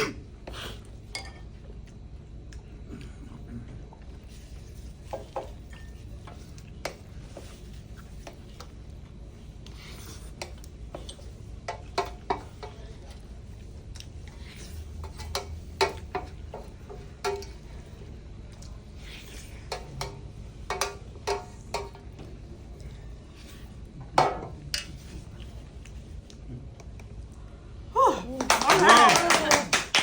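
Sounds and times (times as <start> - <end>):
low room hum: 0.0 - 30.0
utensils clinking against bowls: 1.1 - 1.6, 14.3 - 17.7.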